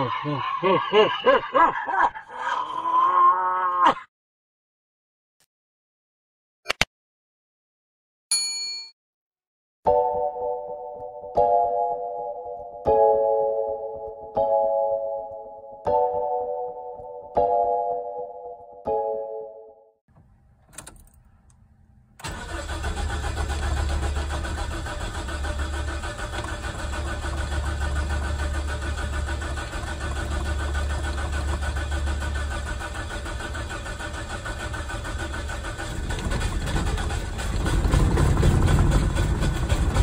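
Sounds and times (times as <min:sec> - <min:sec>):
pickup engine starting and idling: 0:20.1 - 0:40.0.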